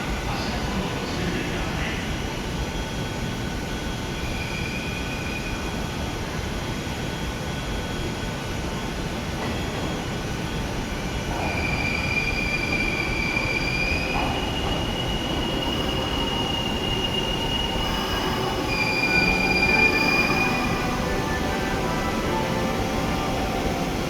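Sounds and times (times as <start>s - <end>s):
train rumbling over rails: 0.0s - 24.0s
train wheels squealing: 3.7s - 6.0s, 11.3s - 23.7s.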